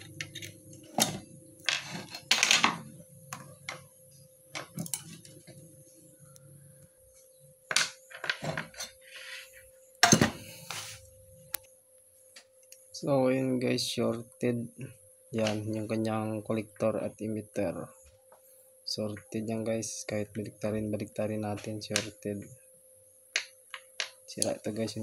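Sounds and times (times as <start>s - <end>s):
faint steady tone: 0.0s - 25.0s.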